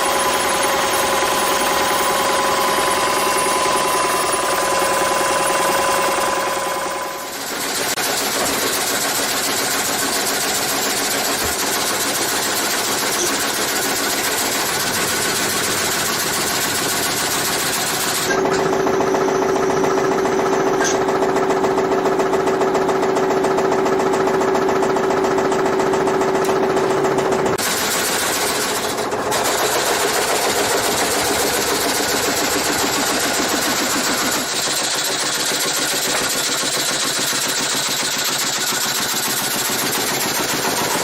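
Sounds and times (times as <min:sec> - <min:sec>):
machine humming: 0:00.0 - 0:20.2
sawmill machinery running: 0:00.0 - 0:41.0.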